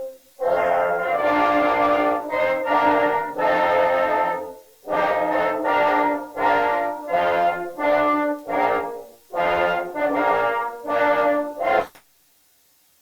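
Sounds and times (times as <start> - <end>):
brass ensemble playing chords: 0.0 - 11.9.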